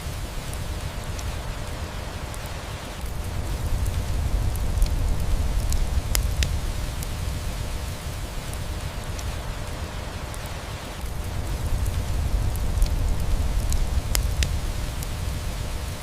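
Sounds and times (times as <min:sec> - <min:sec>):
steady rain hiss: 0:00.0 - 0:16.0
wood fire crackling: 0:00.0 - 0:16.0
low rumble: 0:03.2 - 0:08.2, 0:11.2 - 0:15.9.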